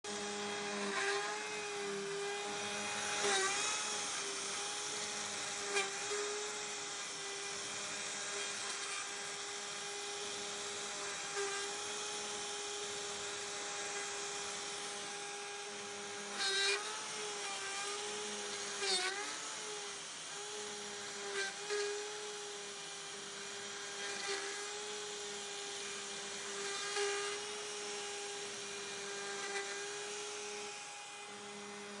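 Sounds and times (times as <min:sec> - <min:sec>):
router spindle whine cutting wood: 0:00.0 - 0:32.0.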